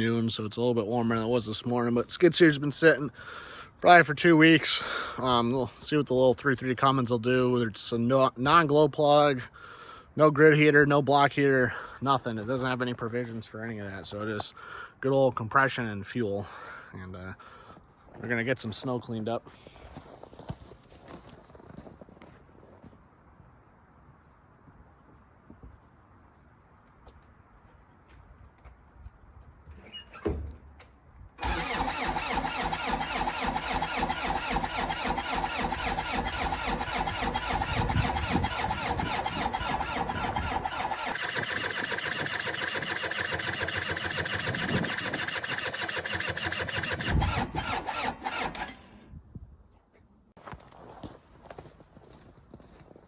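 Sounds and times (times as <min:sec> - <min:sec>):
diesel engine starting: 0:31.4 - 0:49.0.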